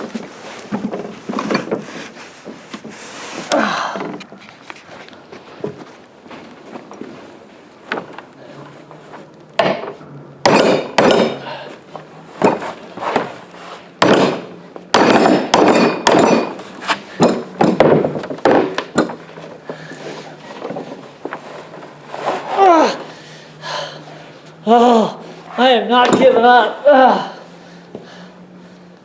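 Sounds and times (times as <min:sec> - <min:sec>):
hammer striking metal pipe: 0:10.4 - 0:11.5, 0:14.0 - 0:16.6.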